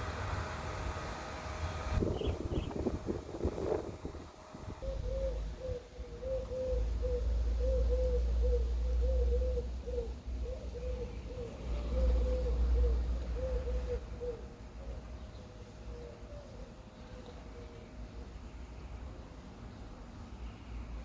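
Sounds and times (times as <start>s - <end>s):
steady low rumble: 1.8s - 11.5s
bird cooing: 4.8s - 17.8s.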